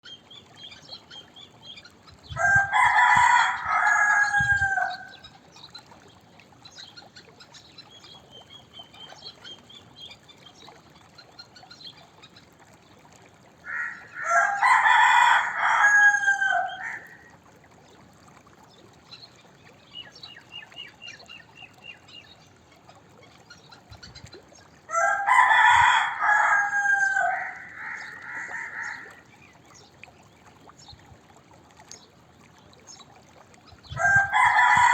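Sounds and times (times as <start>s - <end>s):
rooster crowing: 2.4s - 5.1s, 13.7s - 17.3s, 24.9s - 29.0s, 34.0s - 34.9s.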